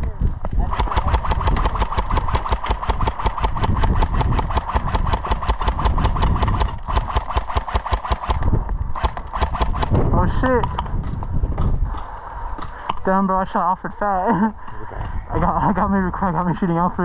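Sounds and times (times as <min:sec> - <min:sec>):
airsoft rifle firing full auto: 0:00.7 - 0:10.0.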